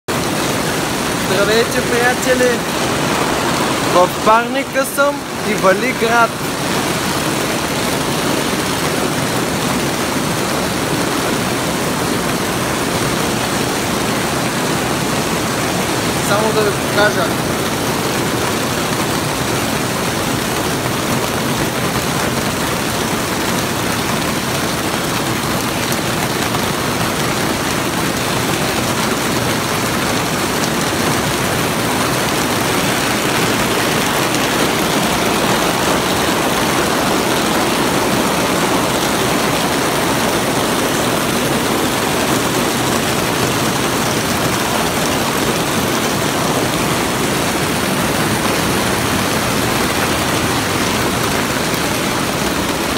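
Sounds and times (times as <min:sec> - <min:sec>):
hail and rain on greenhouse roof: 0:00.1 - 0:52.9.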